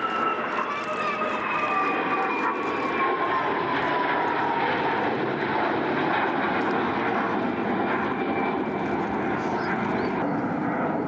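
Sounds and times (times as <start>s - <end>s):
jet engines during flypast: 0.0s - 11.0s.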